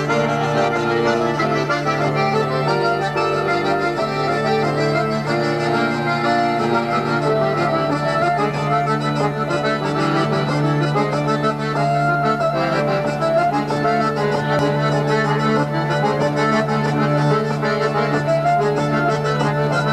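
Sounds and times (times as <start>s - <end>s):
bagpipes: 0.0s - 19.9s
button accordion: 0.0s - 19.9s
hurdy-gurdy: 0.0s - 19.9s.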